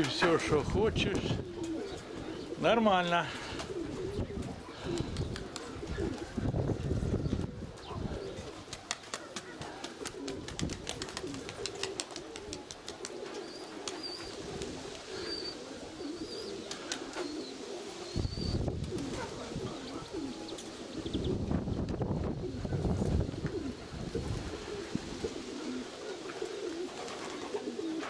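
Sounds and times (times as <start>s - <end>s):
pigeons cooing: 0.0s - 28.0s
wind buffeting microphone: 0.3s - 2.6s, 3.4s - 8.8s, 10.3s - 11.6s, 18.1s - 20.3s, 20.9s - 25.5s.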